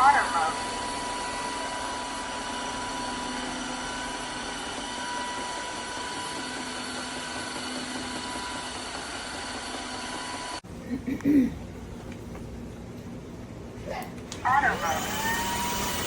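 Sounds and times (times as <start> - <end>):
vacuum mop whirring: 0.8 - 10.6, 14.4 - 16.0.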